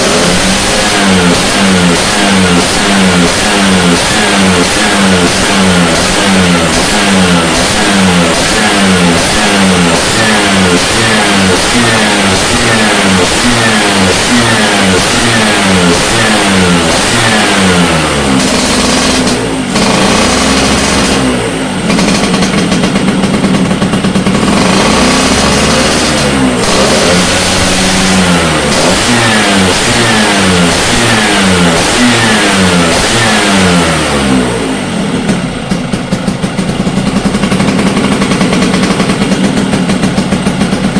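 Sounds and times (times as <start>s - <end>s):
scooter engine revving: 0.0s - 40.9s.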